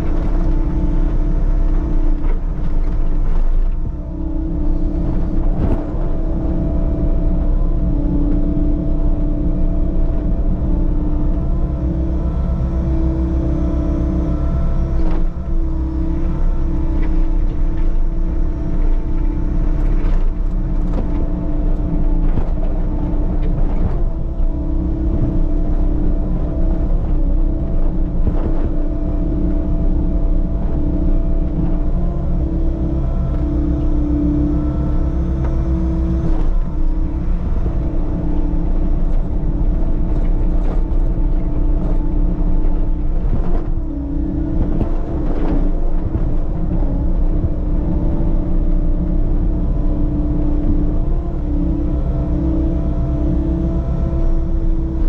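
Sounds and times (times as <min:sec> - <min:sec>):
diesel engine rumbling: 0:00.0 - 0:55.0.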